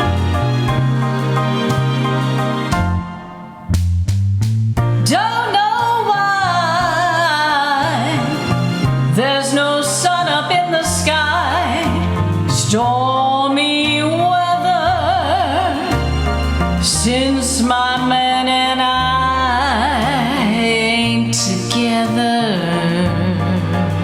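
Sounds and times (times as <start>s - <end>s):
bass line: 0.0s - 24.0s
woman singing with vibrato: 5.1s - 16.0s, 16.8s - 24.0s.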